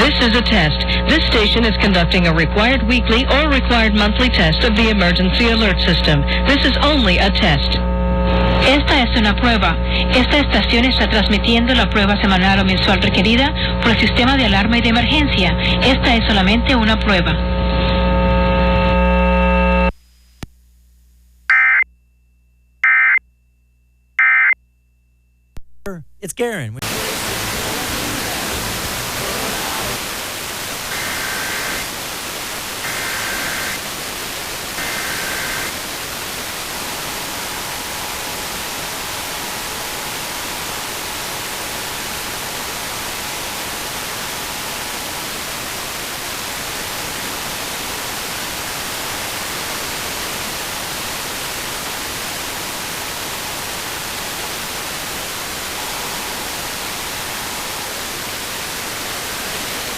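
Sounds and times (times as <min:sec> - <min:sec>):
radio static hiss: 0:17.7 - 0:21.5, 0:25.9 - 0:59.9
data tone bursts: 0:21.5 - 0:21.8, 0:22.8 - 0:23.2, 0:24.2 - 0:24.6, 0:30.9 - 0:31.9, 0:32.9 - 0:33.8, 0:34.8 - 0:35.7
two-tone attention signal: 0:21.5 - 0:21.8.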